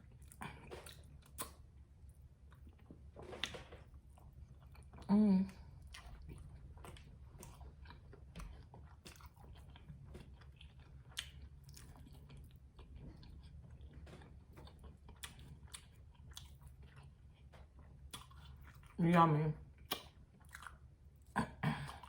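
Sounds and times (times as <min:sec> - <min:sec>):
chewing and biting food: 0:00.0 - 0:19.0, 0:19.7 - 0:22.0
low steady hum: 0:00.0 - 0:22.0
mouth clicks and smacks: 0:19.8 - 0:20.6.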